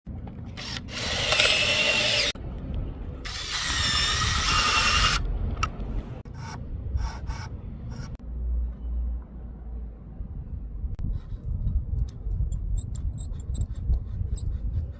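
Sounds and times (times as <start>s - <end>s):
power drill boring into wood: 0.6s - 2.3s.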